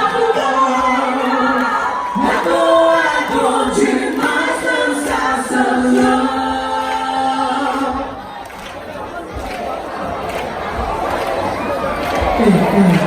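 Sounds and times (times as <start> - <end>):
choir singing a cappella: 0.0 - 8.6.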